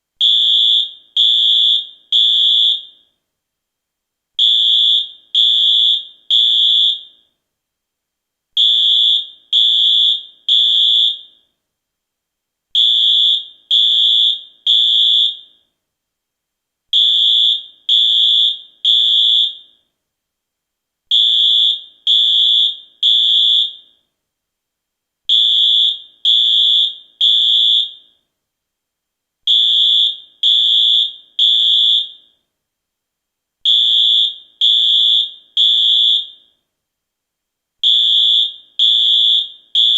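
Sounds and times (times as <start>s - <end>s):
fire alarm high-pitched beeps: 0.2s - 3.2s, 4.4s - 7.3s, 8.6s - 11.5s, 12.8s - 15.7s, 17.0s - 19.9s, 21.1s - 24.0s, 25.3s - 28.2s, 29.5s - 32.4s, 33.7s - 36.6s, 37.8s - 39.9s.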